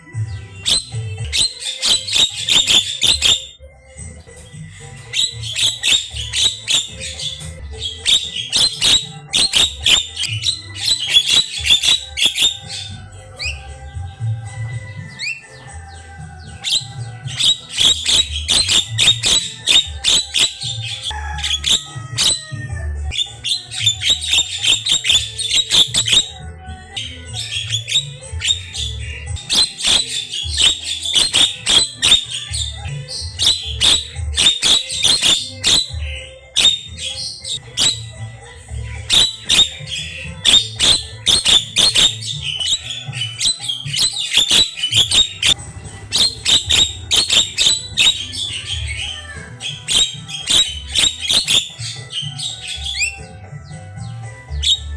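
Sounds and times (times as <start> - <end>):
bird chattering song: 0.0 - 54.9.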